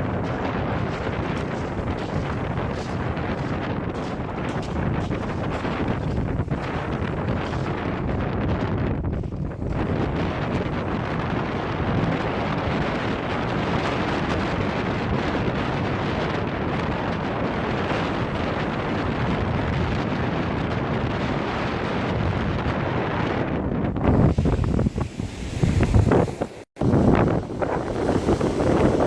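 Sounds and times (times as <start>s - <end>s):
lake surf breaking: 0.0s - 8.2s, 9.5s - 12.0s, 12.7s - 20.0s, 24.0s - 29.0s
wind blowing across microphone: 0.0s - 29.0s.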